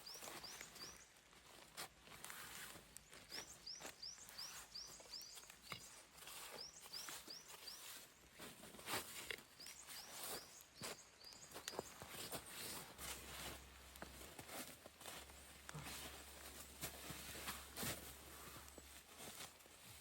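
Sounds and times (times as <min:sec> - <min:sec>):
small bird chirping: 0:00.0 - 0:01.2, 0:02.6 - 0:08.5, 0:09.2 - 0:12.9
soft crunches: 0:00.1 - 0:20.0.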